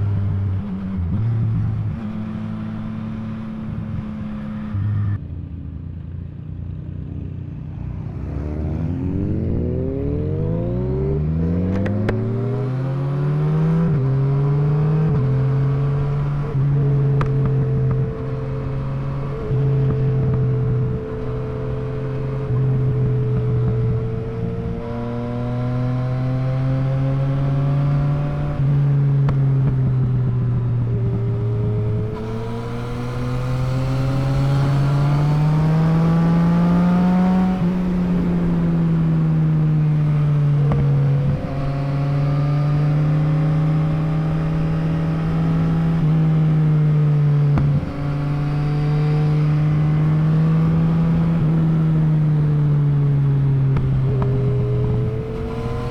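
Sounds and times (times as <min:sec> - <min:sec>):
motorcycle engine revving: 0:07.8 - 0:55.9.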